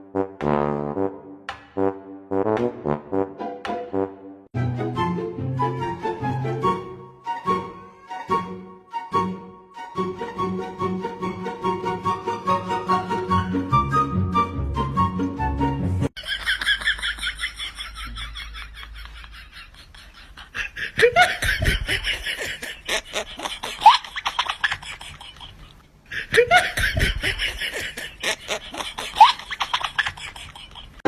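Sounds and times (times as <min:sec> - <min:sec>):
laughter in rapid bursts: 0:16.2 - 0:31.0.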